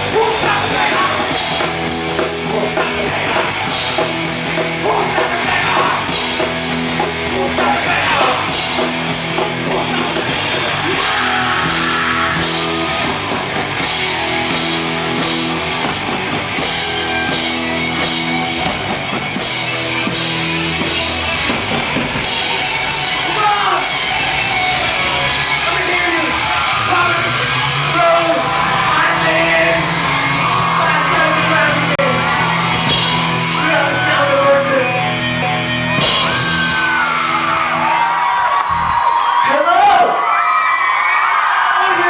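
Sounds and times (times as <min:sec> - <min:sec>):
drum kit: 0:00.0 - 0:39.2
distorted electric guitars: 0:00.0 - 0:39.5
bass guitar: 0:00.0 - 0:40.4
person singing: 0:02.2 - 0:03.7, 0:07.2 - 0:08.6.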